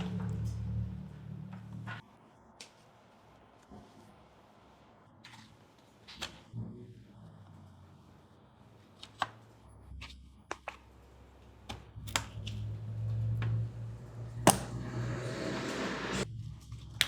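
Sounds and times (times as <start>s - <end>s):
low steady hum: 0.0s - 2.0s, 11.2s - 16.9s.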